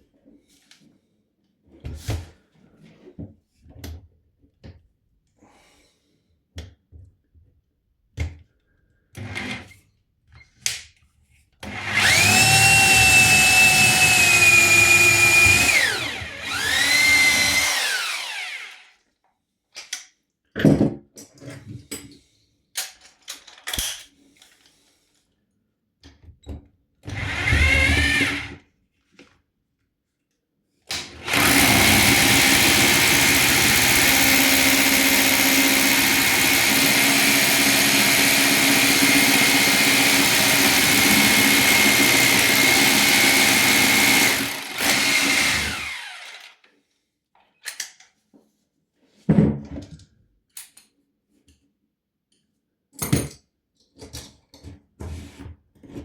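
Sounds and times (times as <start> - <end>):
power drill boring through floor: 9.2 - 9.8, 11.6 - 19.0, 27.0 - 28.6, 30.9 - 46.6.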